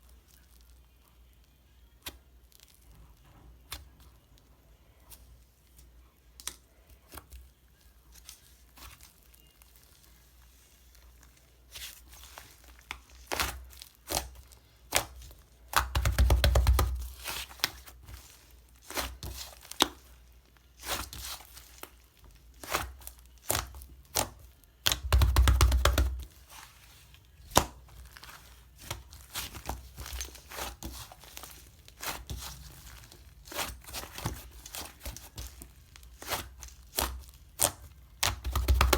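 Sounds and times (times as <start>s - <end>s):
slime tearing: 11.7s - 38.9s
slime popping and crackling: 20.8s - 38.9s.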